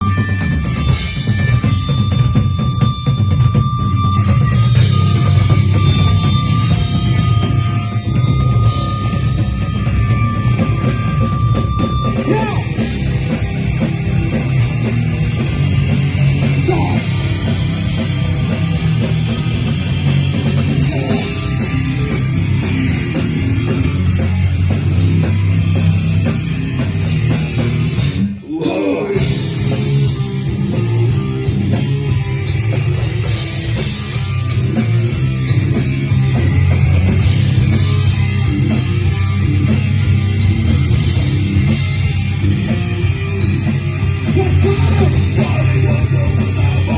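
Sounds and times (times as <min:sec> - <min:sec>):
heavy metal band playing live: 0:00.0 - 0:46.9.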